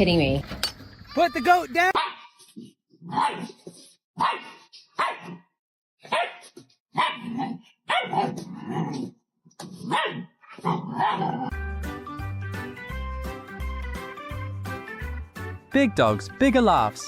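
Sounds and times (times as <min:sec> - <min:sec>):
dog barking: 0:01.9 - 0:02.4, 0:03.0 - 0:03.6, 0:04.2 - 0:08.4, 0:09.8 - 0:11.5.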